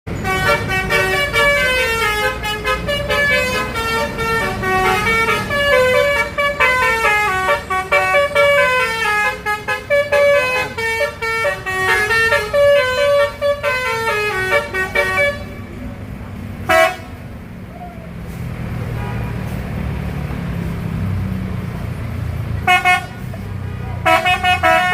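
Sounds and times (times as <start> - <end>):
musical bus horns playing tune: 0.1 - 15.8, 16.5 - 17.4, 22.6 - 24.9
low engine rumble: 0.1 - 24.9.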